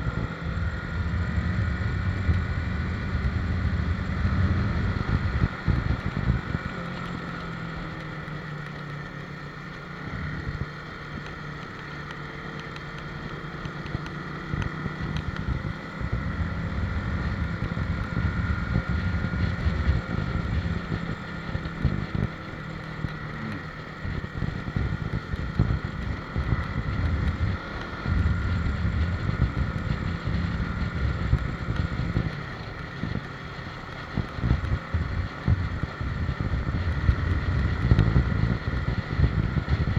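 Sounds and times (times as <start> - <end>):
wind buffeting microphone: 0.0 - 6.9, 24.0 - 39.9
motorcycle engine running: 0.0 - 39.9.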